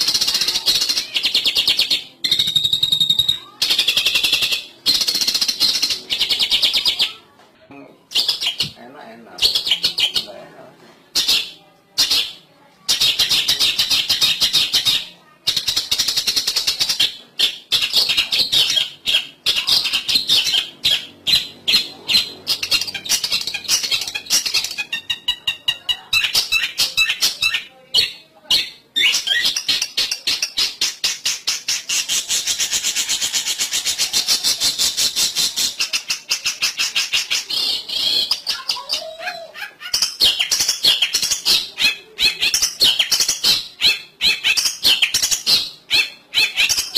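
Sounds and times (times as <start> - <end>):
harsh bird chattering: 0.0 - 7.2, 8.1 - 10.4, 11.1 - 46.9.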